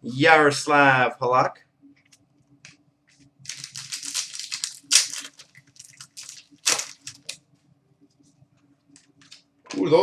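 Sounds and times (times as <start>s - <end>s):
wrapper crinkling and tearing: 3.4s - 7.4s.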